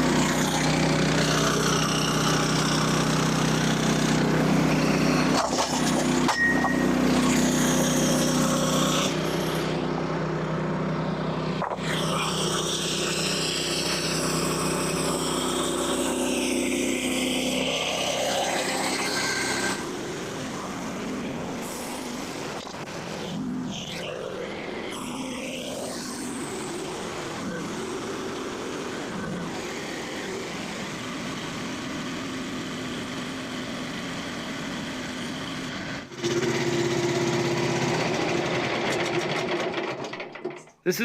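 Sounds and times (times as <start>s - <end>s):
sawmill engine running: 0.0s - 41.0s.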